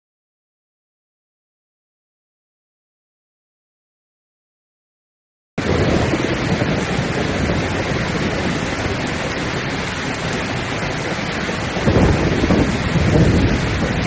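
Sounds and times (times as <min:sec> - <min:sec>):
heavy rain: 0:05.6 - 0:14.0
wind: 0:05.6 - 0:14.0.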